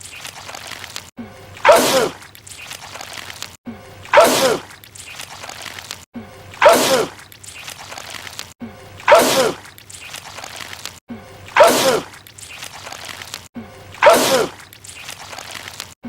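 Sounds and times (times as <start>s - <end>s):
man sneezing: 6.6s - 7.1s, 9.1s - 9.6s, 11.6s - 12.1s, 14.0s - 14.6s.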